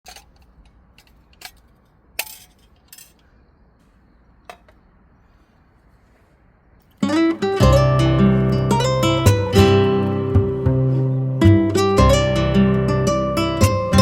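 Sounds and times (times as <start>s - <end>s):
light sharp clinks and knocks: 0.0s - 3.4s.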